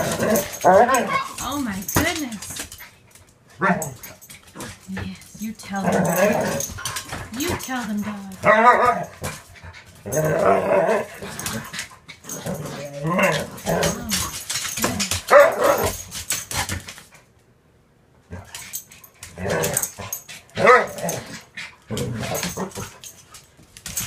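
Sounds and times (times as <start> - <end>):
small dogs barking: 0.0 - 1.4, 15.1 - 16.0, 20.6 - 21.2
small dogs growling: 0.0 - 1.4, 3.6 - 9.4, 10.0 - 15.3.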